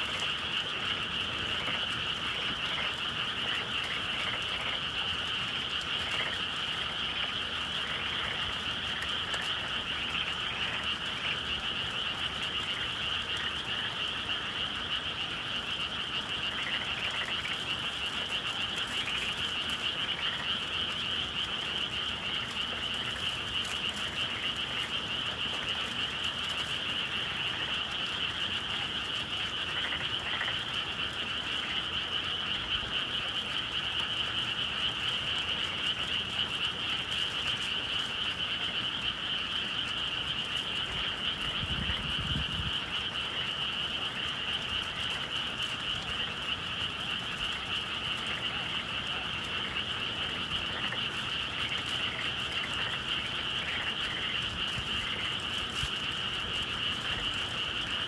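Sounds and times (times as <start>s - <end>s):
chorus of frogs calling: 0.0s - 58.0s.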